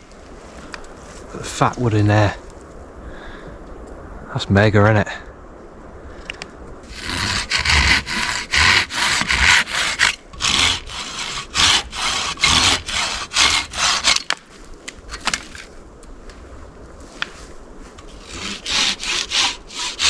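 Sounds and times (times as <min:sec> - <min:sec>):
hand saw cutting wood: 0:06.9 - 0:14.4, 0:18.1 - 0:20.0.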